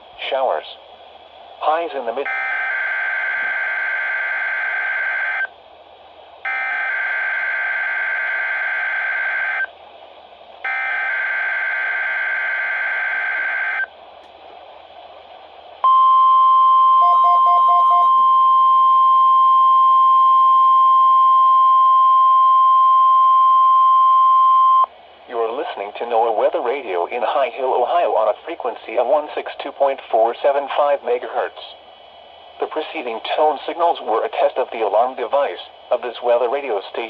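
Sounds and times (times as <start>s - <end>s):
high warning alarm tone: 6.5s - 9.7s, 10.7s - 13.9s, 15.8s - 19.5s
raspy warbling data tone: 17.0s - 18.2s.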